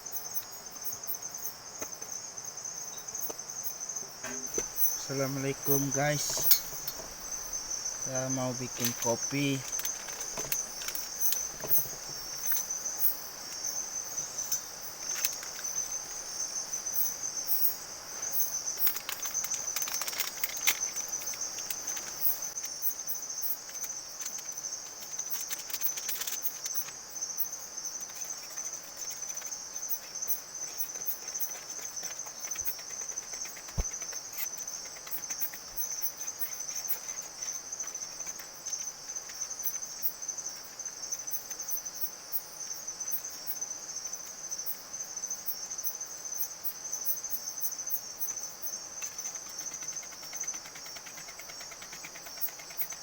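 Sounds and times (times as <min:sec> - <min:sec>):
crickets trilling: 0:00.0 - 0:53.0
sharp clicks and light knocks: 0:04.2 - 0:13.7, 0:14.4 - 0:16.2, 0:18.7 - 0:22.9, 0:23.6 - 0:27.0, 0:28.0 - 0:40.0, 0:48.9 - 0:53.0.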